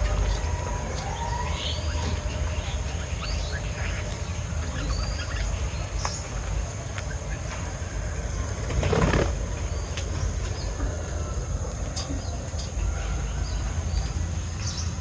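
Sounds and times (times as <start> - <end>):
small birds chirping: 0.0 - 15.0.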